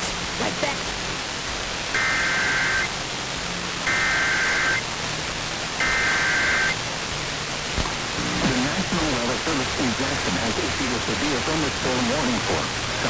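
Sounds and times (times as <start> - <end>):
radio static: 1.8 - 3.0, 3.8 - 4.9, 5.8 - 6.8, 7.8 - 13.0
warbling digital data tones: 1.9 - 2.9, 3.8 - 4.8, 5.8 - 6.8.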